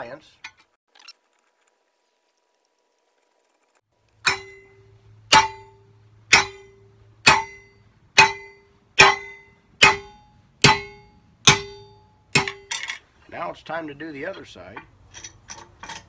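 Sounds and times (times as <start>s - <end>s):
hammer striking metal: 4.2s - 13.0s.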